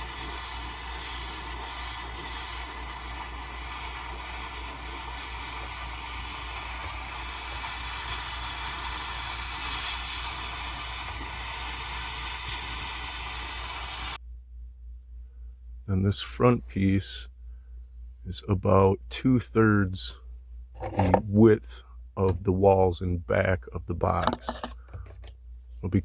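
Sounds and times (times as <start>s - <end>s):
torch flame hissing: 0.0s - 14.2s.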